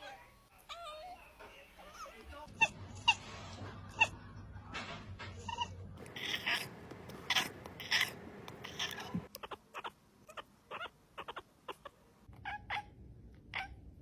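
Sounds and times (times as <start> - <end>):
cat crying: 5.4 - 6.7, 7.3 - 13.8.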